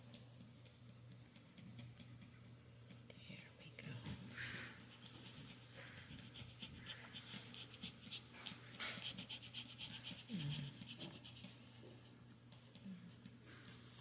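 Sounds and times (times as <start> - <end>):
puppy breathing in quick puffs: 4.3 - 11.6.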